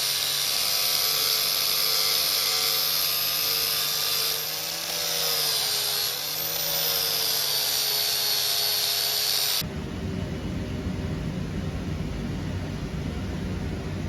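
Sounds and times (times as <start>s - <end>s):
power tool whining: 0.0s - 9.6s
low rumbling noise: 9.6s - 14.0s.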